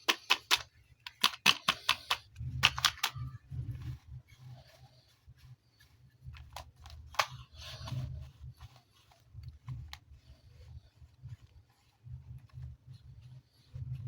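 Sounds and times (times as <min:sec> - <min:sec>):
plastic toys clicking: 0:00.0 - 0:03.3.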